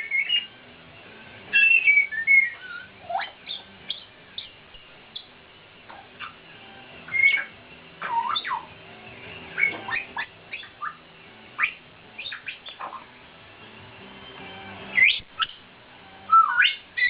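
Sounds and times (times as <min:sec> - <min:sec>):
parrots squawking and whistling: 0:00.0 - 0:00.6, 0:01.5 - 0:05.3, 0:06.2 - 0:08.8, 0:09.5 - 0:11.0, 0:11.6 - 0:13.2, 0:14.9 - 0:15.6, 0:16.3 - 0:17.0.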